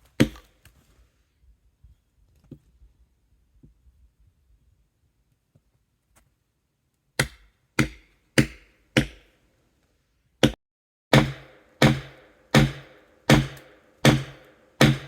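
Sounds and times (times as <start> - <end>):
hand tool striking wooden log: 7.2 - 9.2, 11.2 - 15.0.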